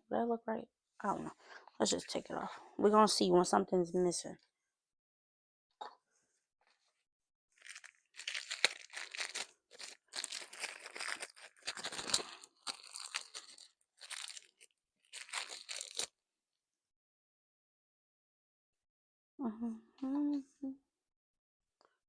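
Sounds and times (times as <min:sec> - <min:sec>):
plastic packaging rustling: 0:07.6 - 0:16.1.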